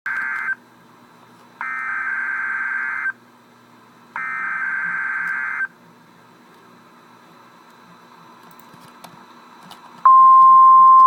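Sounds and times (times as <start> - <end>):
digital data tone bursts: 1.6 - 3.1, 4.2 - 5.7.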